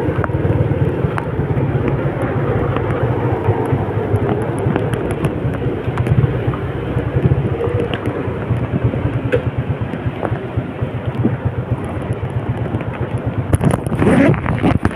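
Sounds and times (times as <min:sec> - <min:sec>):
engine hum: 0:00.0 - 0:14.9
rain rushing on wet road: 0:00.0 - 0:14.9
sharp ticks: 0:02.6 - 0:14.0.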